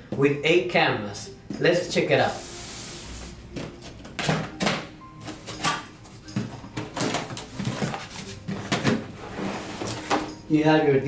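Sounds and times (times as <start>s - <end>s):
cardboard boxes knocking and rustling: 6.4s - 10.3s.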